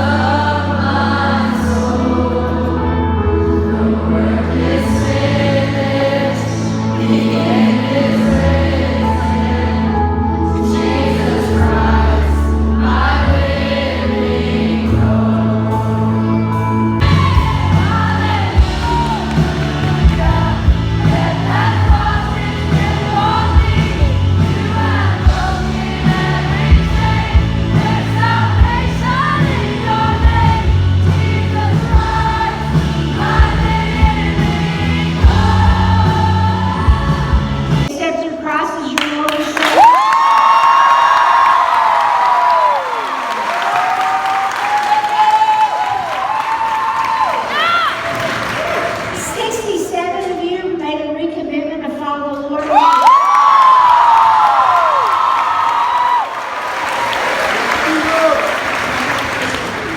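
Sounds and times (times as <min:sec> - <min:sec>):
group of voices singing: 0:00.0 - 0:37.9
keyboard and bass chords: 0:00.0 - 0:37.9
steady drum beat: 0:17.0 - 0:37.9.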